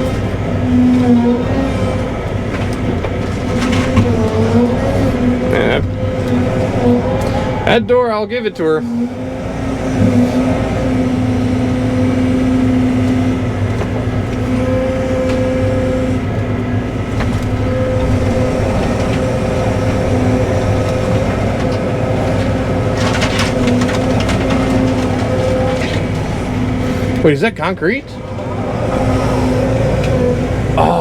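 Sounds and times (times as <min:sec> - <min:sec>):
excavator diesel engine under load: 0:00.0 - 0:31.0
hydraulic pump whine: 0:00.0 - 0:31.0
wooden debris cracking and crunching: 0:00.1 - 0:07.6, 0:16.8 - 0:27.2.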